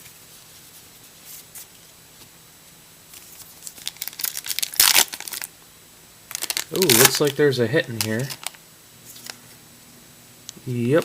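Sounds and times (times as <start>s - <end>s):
handling of cards: 0.0s - 2.4s, 3.1s - 5.5s, 6.3s - 9.6s
foil wrapper crinkling: 3.1s - 5.5s, 6.3s - 9.4s.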